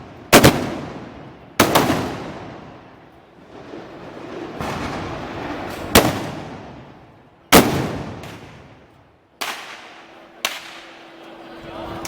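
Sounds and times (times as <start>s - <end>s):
gunpowder bangs with echo: 0.0s - 2.8s, 4.5s - 10.9s.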